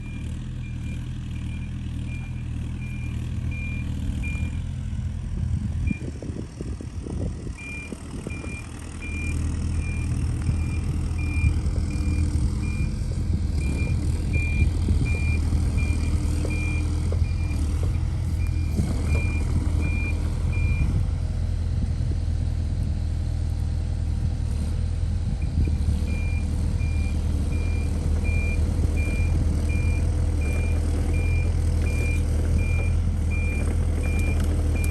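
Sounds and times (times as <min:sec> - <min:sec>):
diesel engine running: 0:00.0 - 0:34.9
travel alarm beeping: 0:26.1 - 0:34.9.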